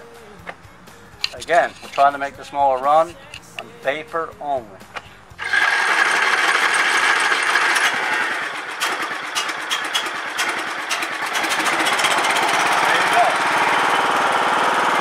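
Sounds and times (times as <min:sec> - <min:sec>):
lawn mower engine running: 0:04.9 - 0:15.0.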